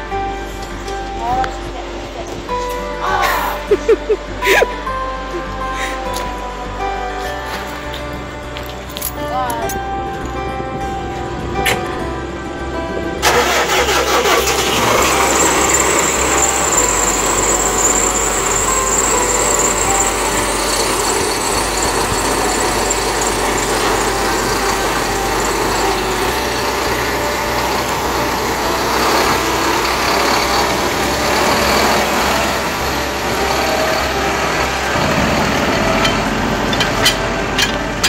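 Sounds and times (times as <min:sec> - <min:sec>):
machinery running: 0:00.0 - 0:38.0.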